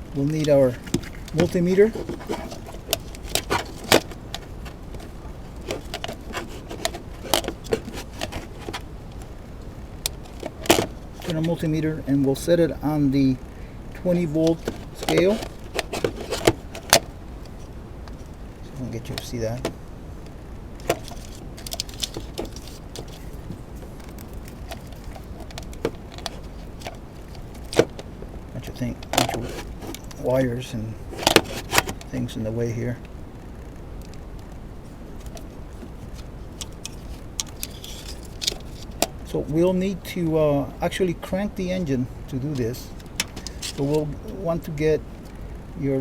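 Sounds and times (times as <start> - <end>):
low steady background: 0.0 - 46.0
light clicks and knocks from handling: 14.1 - 18.2, 42.4 - 44.4.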